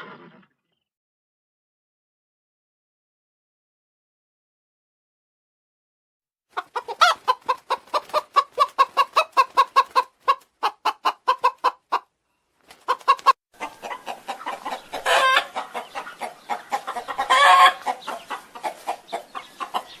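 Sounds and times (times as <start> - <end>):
long loud chicken calls: 6.5 - 12.1, 12.8 - 20.0
chickens clucking: 6.5 - 20.0.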